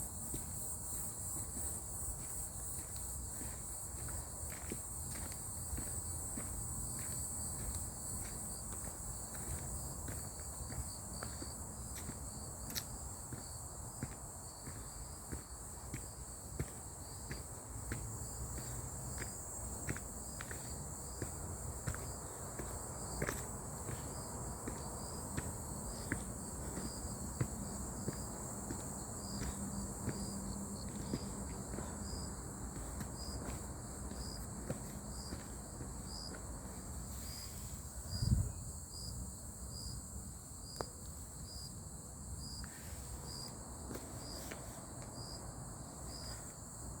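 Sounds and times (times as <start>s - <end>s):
insect chirping: 0.0s - 47.0s
insects droning: 0.0s - 47.0s.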